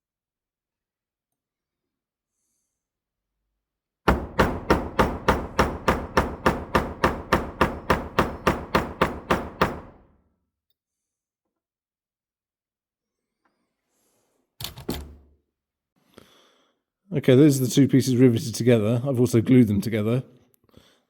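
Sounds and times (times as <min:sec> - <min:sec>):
small hammer striking metal: 0:04.1 - 0:10.0.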